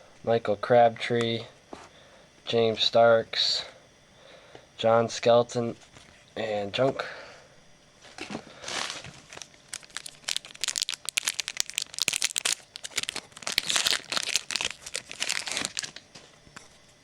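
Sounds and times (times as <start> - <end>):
foil wrapper tearing and crinkling: 8.6 - 16.0.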